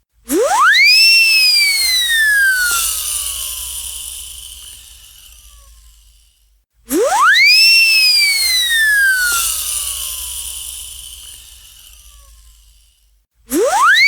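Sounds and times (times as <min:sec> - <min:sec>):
cartoon siren whistle: 0:00.4 - 0:02.8, 0:06.9 - 0:09.4, 0:13.5 - 0:14.0.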